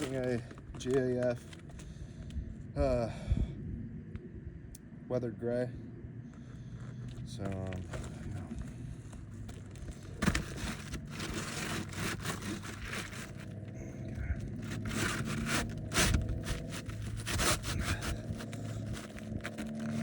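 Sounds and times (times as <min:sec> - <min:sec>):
roofing shingle scraping: 0:00.0 - 0:02.0, 0:06.6 - 0:20.0.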